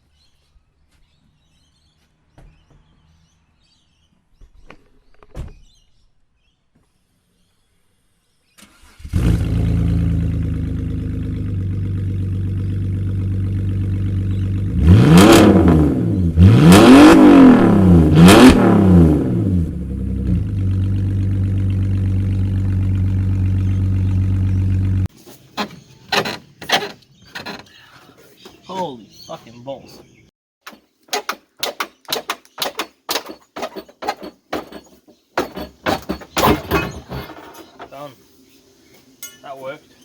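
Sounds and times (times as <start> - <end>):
car engine starting: 8.5 - 26.9
car engine revving: 8.7 - 25.1
car engine idling: 8.8 - 15.0, 19.4 - 25.1.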